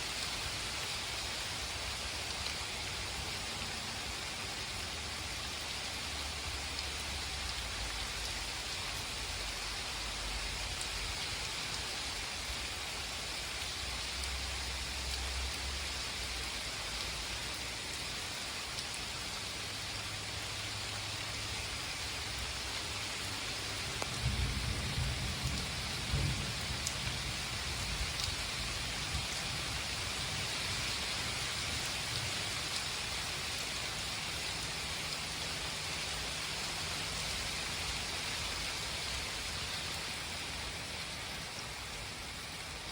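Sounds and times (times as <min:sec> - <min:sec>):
heavy rain pattering: 0:00.0 - 0:42.9
low rumble of thunder: 0:23.9 - 0:30.5.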